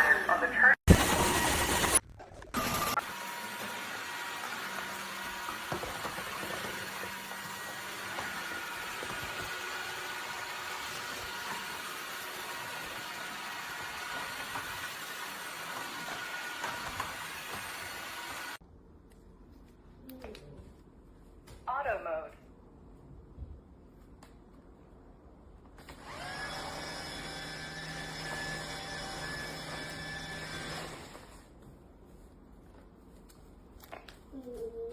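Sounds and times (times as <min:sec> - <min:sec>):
vacuum mop hissing: 0:02.6 - 0:18.6.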